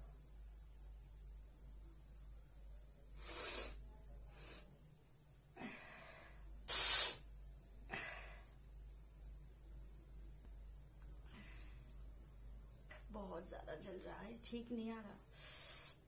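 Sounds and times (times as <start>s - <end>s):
woman breathing and sniffing: 3.2s - 4.7s, 5.6s - 7.3s, 15.3s - 16.0s.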